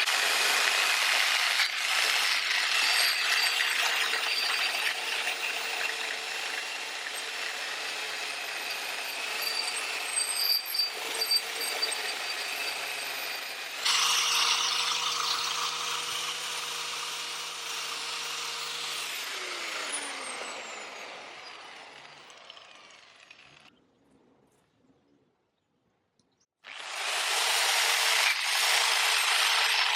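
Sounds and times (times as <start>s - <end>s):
angle grinder grinding metal: 0.0s - 23.7s, 26.7s - 29.9s
grinder winding down whine: 18.6s - 23.7s.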